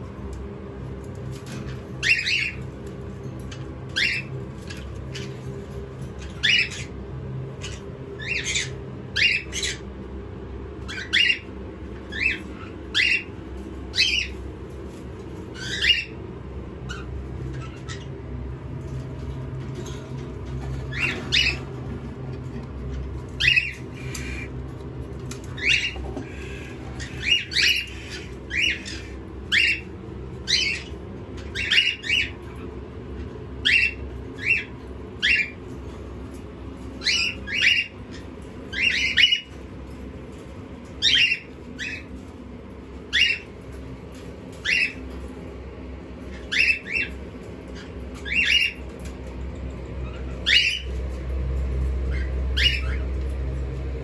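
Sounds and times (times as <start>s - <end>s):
steady low hum: 0.0s - 54.0s
parrot squawking: 1.5s - 2.6s, 3.9s - 7.0s, 7.6s - 9.9s, 10.8s - 14.4s, 15.5s - 16.2s, 16.9s - 18.2s, 19.8s - 21.9s, 23.3s - 24.6s, 25.3s - 32.7s, 33.6s - 35.6s, 37.0s - 39.6s, 41.0s - 42.1s, 43.1s - 43.5s, 44.5s - 45.1s, 46.3s - 48.9s, 50.0s - 51.0s, 52.0s - 53.2s.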